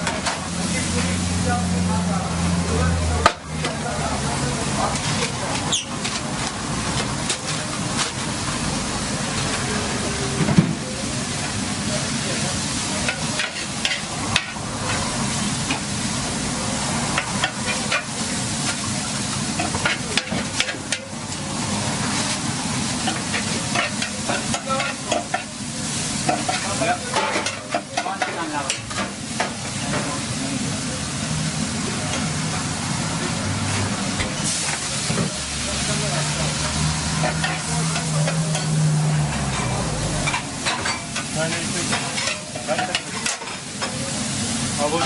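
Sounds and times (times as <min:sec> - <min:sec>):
food sizzling in a hot pan: 0:00.0 - 0:45.0.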